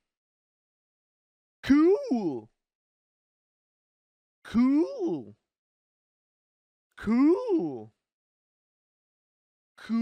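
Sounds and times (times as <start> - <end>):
person saying a word: 7.0 - 8.0.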